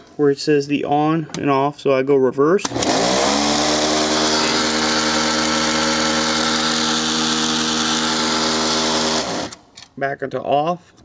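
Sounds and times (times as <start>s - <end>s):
film projector motor humming: 2.7s - 9.6s.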